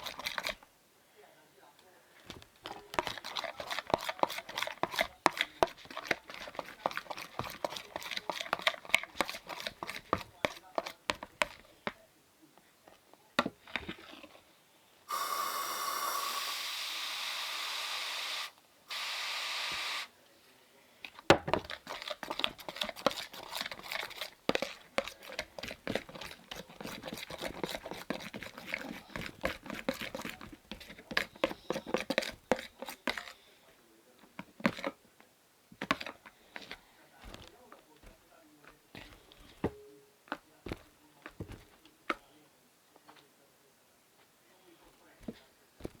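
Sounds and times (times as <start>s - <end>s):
aerosol can hissing: 15.1s - 20.1s.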